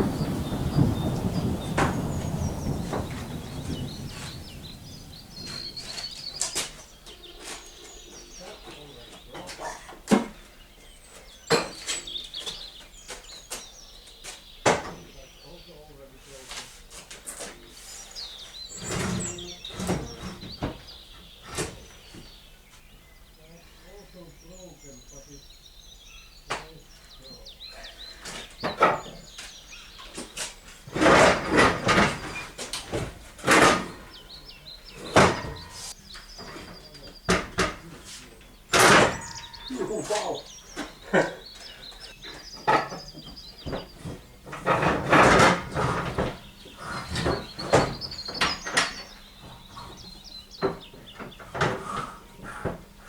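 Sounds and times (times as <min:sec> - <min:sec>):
knocking: 0:00.0 - 0:06.8, 0:28.3 - 0:41.2, 0:42.6 - 0:52.9
scraping and rustling: 0:00.0 - 0:14.6, 0:16.1 - 0:22.4, 0:27.9 - 0:53.0
birds chirping: 0:00.0 - 0:53.0.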